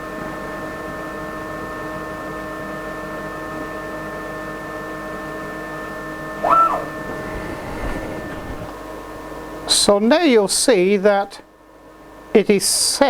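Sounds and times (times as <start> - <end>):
stepper motor whirring: 6.4 - 8.8.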